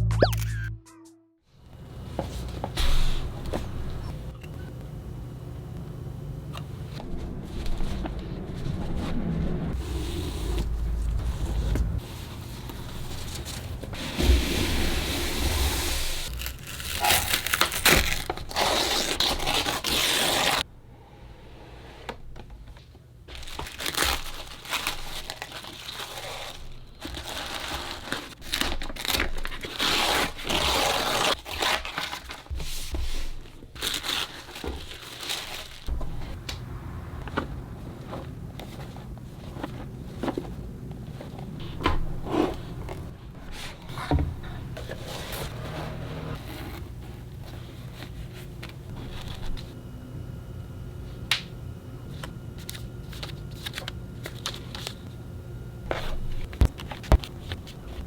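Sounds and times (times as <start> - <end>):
packaging crinkling and tearing: 16.2 - 20.6, 23.3 - 32.5, 33.4 - 35.9.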